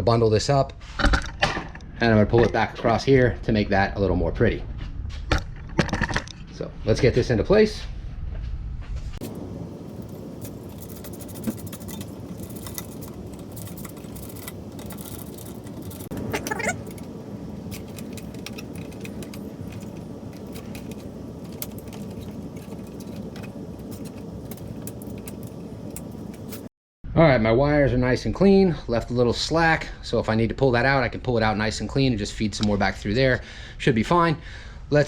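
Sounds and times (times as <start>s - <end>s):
small metallic rattles: 9.2s - 26.7s.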